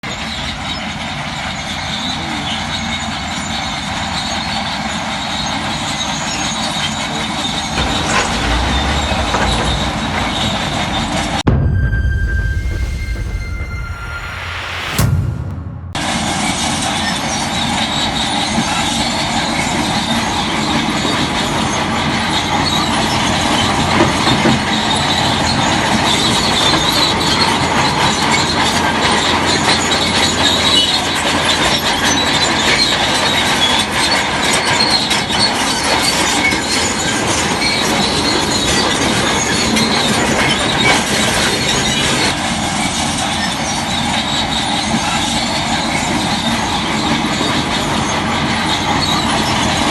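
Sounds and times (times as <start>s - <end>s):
metallic clatter of steel tracks: 0.3s - 16.8s.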